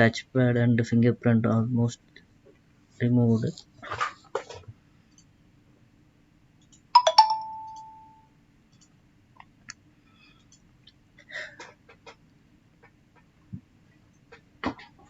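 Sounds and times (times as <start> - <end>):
two-note chime: 7.0 - 8.3.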